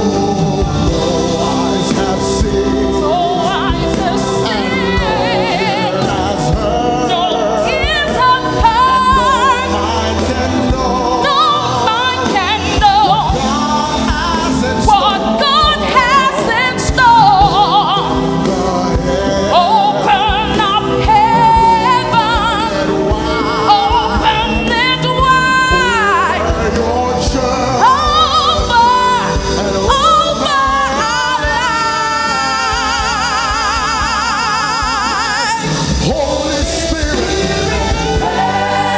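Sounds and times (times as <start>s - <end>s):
gospel singing with vibrato: 0.0s - 38.9s
instrumental accompaniment: 0.0s - 38.9s.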